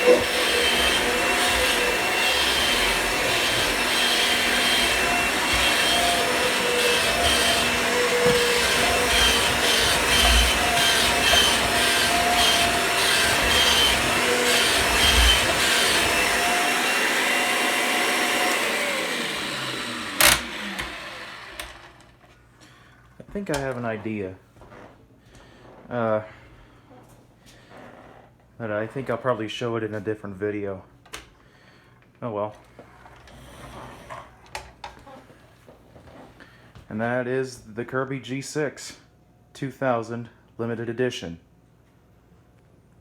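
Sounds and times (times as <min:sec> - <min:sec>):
vacuum motor winding down: 0:00.0 - 0:22.1
vacuum cleaner running: 0:00.0 - 0:22.2.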